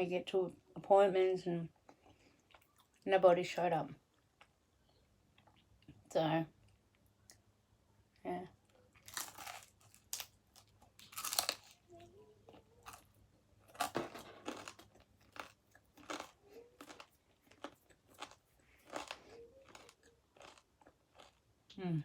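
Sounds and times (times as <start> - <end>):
chewing pizza: 1.8 - 3.1, 8.7 - 21.5
crunchy bites: 9.0 - 11.8, 13.7 - 21.4.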